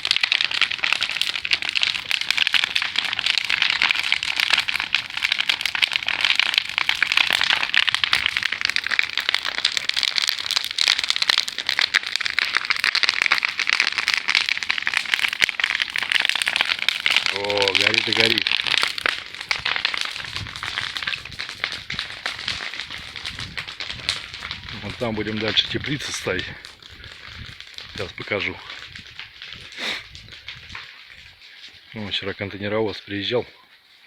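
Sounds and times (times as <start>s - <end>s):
bonfire crackling and popping: 0.0s - 34.0s.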